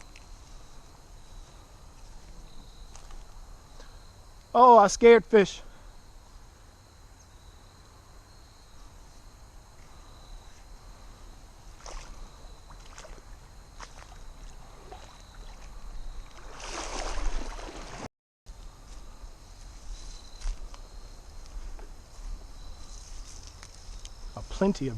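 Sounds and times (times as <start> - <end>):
footsteps on creek bank: 0.0 - 3.4, 11.5 - 24.3.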